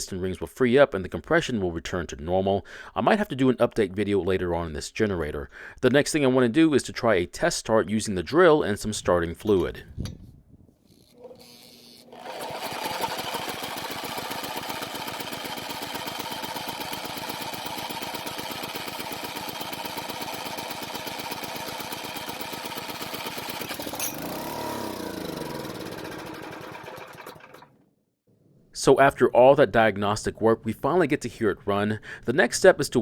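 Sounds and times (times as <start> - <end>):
generator engine running: 12.1 - 27.7.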